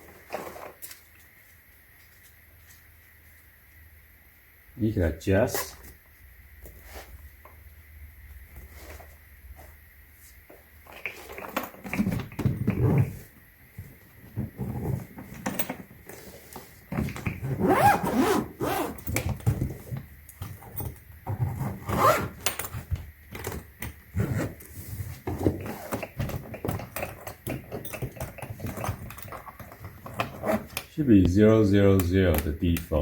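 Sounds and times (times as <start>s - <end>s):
suitcase scraping: 0.0s - 0.8s, 10.8s - 13.4s, 14.2s - 19.9s, 20.5s - 22.9s, 24.1s - 30.8s
zipper running: 17.4s - 19.2s, 21.3s - 22.4s.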